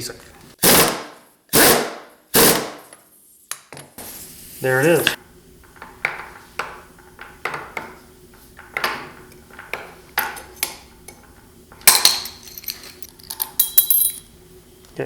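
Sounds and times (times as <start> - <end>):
metal tools clanking: 11.8 - 14.3.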